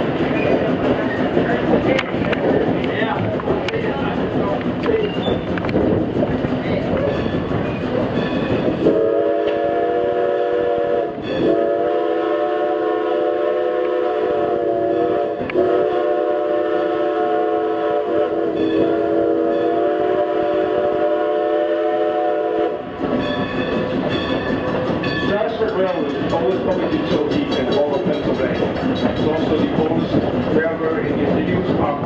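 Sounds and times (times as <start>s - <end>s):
train rumbling: 0.0s - 32.0s
steam whistle chord blasts: 8.8s - 22.8s.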